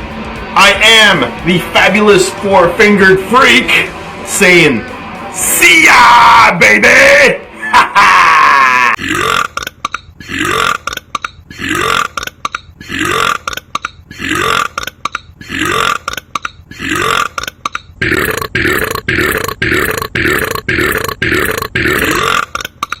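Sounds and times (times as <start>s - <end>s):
man belching: 8.0s - 23.0s.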